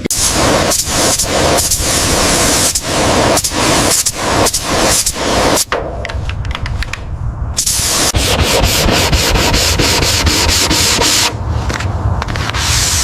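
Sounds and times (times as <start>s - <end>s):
sanding car bodywork: 7.6s - 11.4s, 12.4s - 13.0s.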